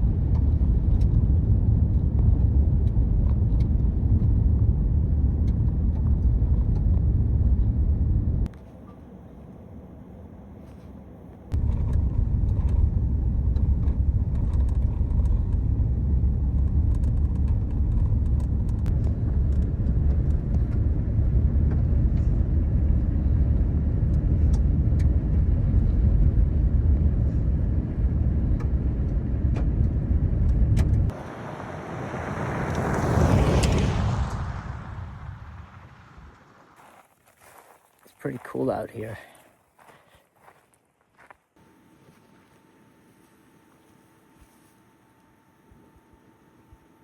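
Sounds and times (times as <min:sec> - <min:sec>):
car road and engine rumble: 0:00.0 - 0:36.8.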